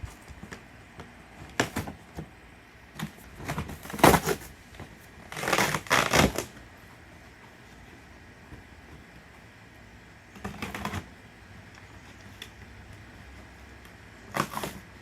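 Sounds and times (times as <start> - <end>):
packing material rustling: 3.2 - 4.6, 5.3 - 6.6.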